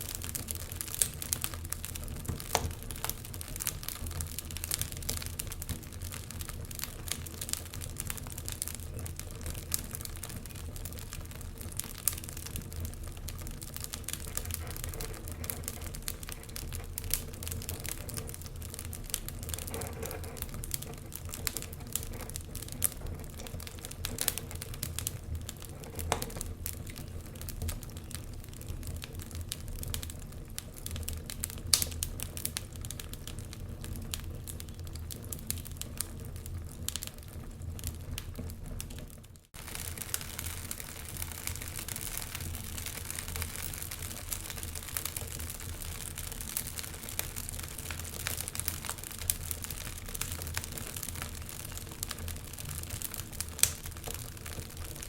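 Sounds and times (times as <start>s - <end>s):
wood fire crackling and popping: 0.0s - 55.0s.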